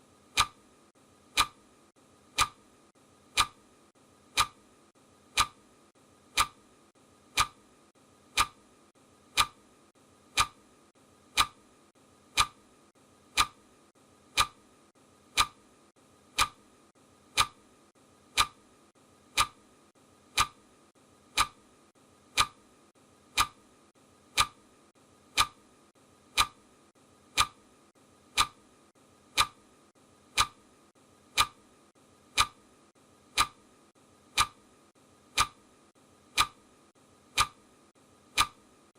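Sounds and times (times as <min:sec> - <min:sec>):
clock ticking: 0:00.3 - 0:00.6, 0:01.3 - 0:01.6, 0:02.3 - 0:02.7, 0:03.3 - 0:03.6, 0:04.3 - 0:04.7, 0:05.3 - 0:05.6, 0:06.3 - 0:06.7, 0:07.3 - 0:07.7, 0:08.3 - 0:08.7, 0:09.3 - 0:09.7, 0:10.3 - 0:10.7, 0:11.3 - 0:11.7, 0:12.3 - 0:12.7, 0:13.3 - 0:13.7, 0:14.3 - 0:14.6, 0:15.3 - 0:15.6, 0:16.3 - 0:16.7, 0:17.3 - 0:17.6, 0:18.3 - 0:18.6, 0:19.3 - 0:19.6, 0:20.3 - 0:20.6, 0:21.3 - 0:21.7, 0:22.3 - 0:22.7, 0:23.3 - 0:23.7, 0:24.3 - 0:24.7, 0:25.3 - 0:25.6, 0:26.3 - 0:26.6, 0:27.3 - 0:27.6, 0:28.3 - 0:28.6, 0:29.3 - 0:29.6, 0:30.3 - 0:30.7, 0:31.3 - 0:31.6, 0:32.3 - 0:32.7, 0:33.3 - 0:33.7, 0:34.3 - 0:34.7, 0:35.3 - 0:35.7, 0:36.3 - 0:36.7, 0:37.3 - 0:37.7, 0:38.3 - 0:38.7.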